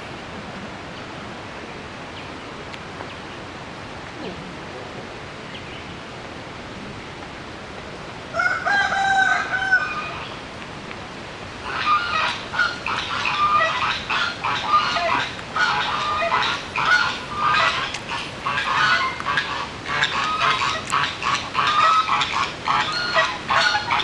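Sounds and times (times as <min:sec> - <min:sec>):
rooster crowing: 0:08.3 - 0:10.3
geese honking: 0:11.6 - 0:24.0.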